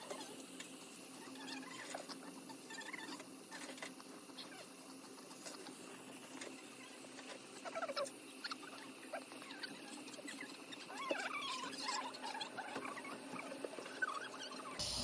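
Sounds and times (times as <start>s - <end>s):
low steady hum: 14.8s - 15.0s.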